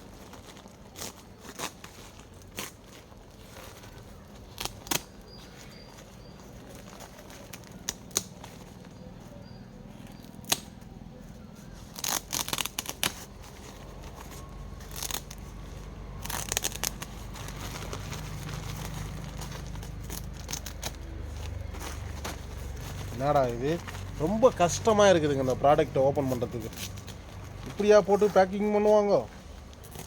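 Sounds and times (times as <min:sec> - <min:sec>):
sack being cut and torn: 0:00.3 - 0:05.6, 0:11.8 - 0:24.5.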